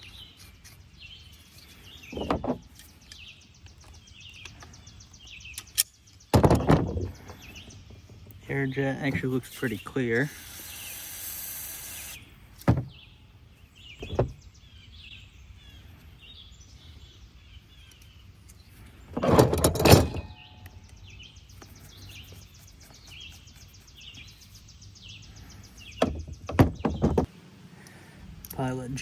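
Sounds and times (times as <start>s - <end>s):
birds chirping: 0.0s - 29.0s
air hiss: 9.5s - 12.2s.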